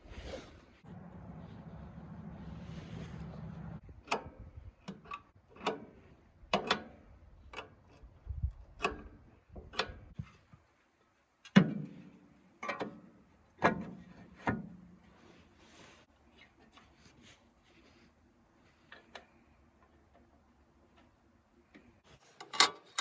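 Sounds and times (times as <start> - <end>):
low hum: 0.8 - 3.8
tools clanking on metal: 22.2 - 23.0.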